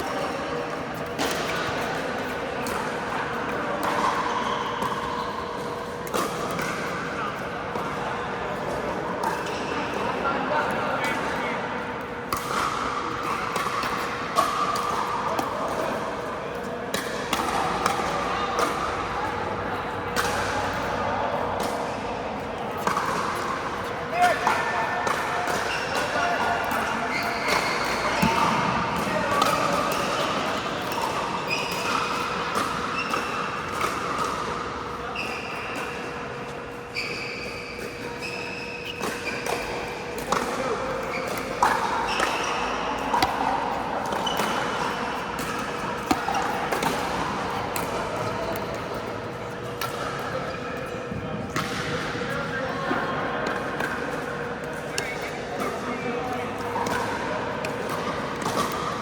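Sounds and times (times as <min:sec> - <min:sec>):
sneakers squeaking on court: 0:44.2 - 0:45.2.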